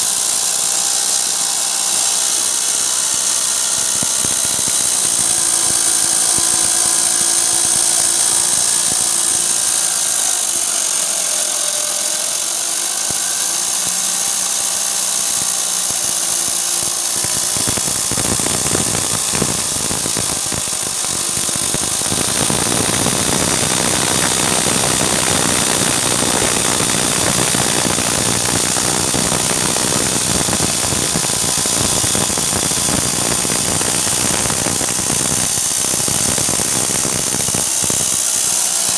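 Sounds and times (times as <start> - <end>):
electric wood saw whining: 0.0 - 38.9.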